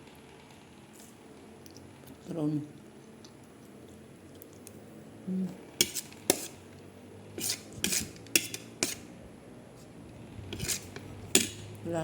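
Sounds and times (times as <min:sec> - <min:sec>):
utensils clinking against a dish: 0:05.8 - 0:06.6, 0:07.4 - 0:09.1, 0:10.5 - 0:11.7
utensils scraping a dish: 0:05.8 - 0:06.6, 0:07.3 - 0:09.1, 0:10.5 - 0:11.7.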